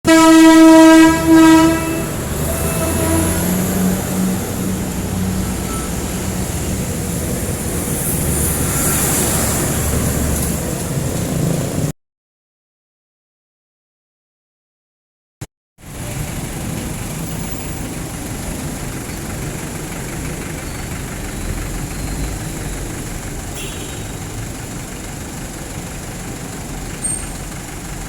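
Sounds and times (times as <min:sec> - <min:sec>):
loud horn blasts: 0:00.0 - 0:10.1, 0:23.6 - 0:24.3
diesel engines rumbling in traffic: 0:00.1 - 0:11.9, 0:15.8 - 0:28.0.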